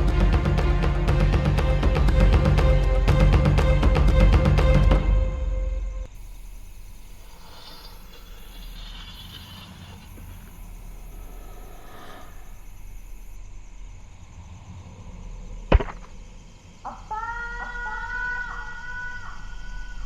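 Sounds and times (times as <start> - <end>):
loud thwack impact: 15.7 - 16.2.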